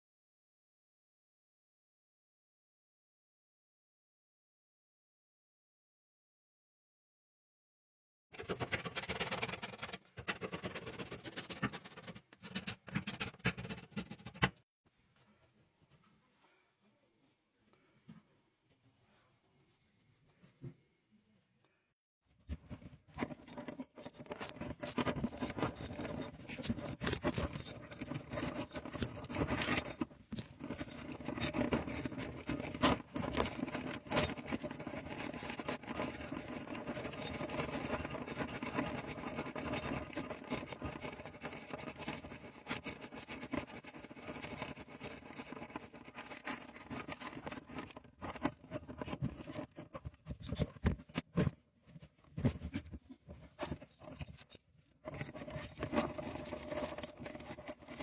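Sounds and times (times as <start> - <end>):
tools scraping and clicking: 22.6 - 58.0.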